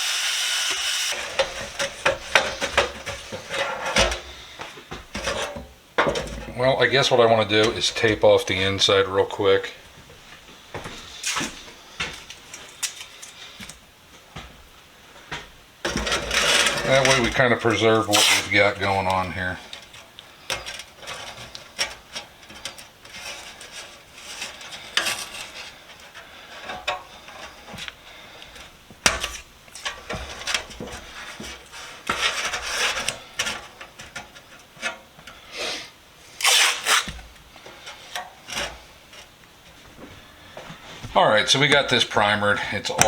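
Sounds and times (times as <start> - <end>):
masking tape rasping: 36.4 - 37.2.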